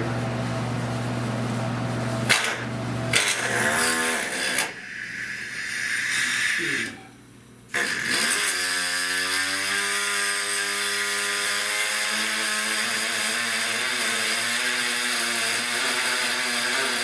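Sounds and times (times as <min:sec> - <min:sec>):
cut-off tool cutting sheet steel: 0:02.3 - 0:05.0, 0:07.8 - 0:17.0.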